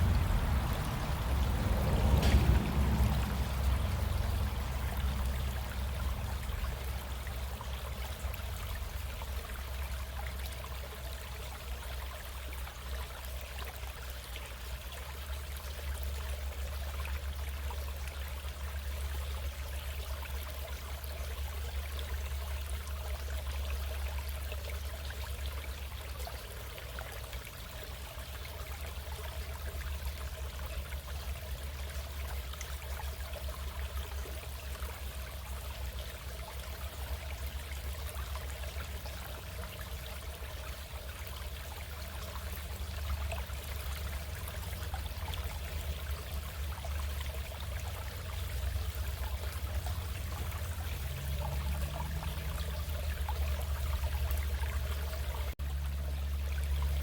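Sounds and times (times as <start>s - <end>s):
low rumble: 0.0s - 7.6s
running water flowing: 0.0s - 57.0s.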